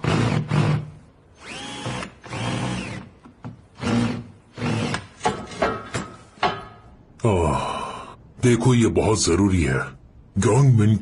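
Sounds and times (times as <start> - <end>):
power drill whining: 0.0 - 5.2.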